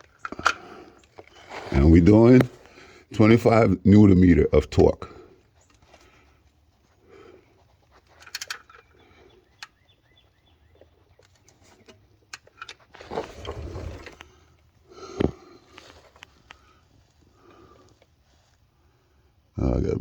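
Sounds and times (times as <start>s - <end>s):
rustling shuffle: 1.1s - 2.8s, 15.5s - 18.8s.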